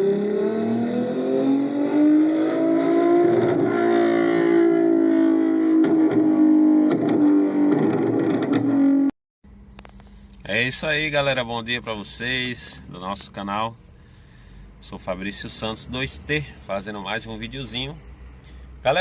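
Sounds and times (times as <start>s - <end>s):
car engine revving: 0.0s - 9.1s.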